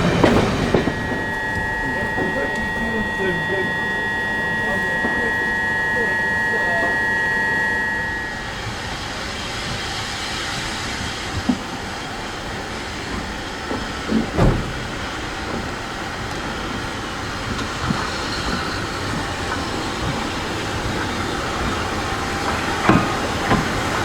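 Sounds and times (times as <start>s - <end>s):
train wheel knocks: 0.0s - 2.5s, 12.6s - 24.0s
train wheels rumbling on rails: 0.0s - 24.0s.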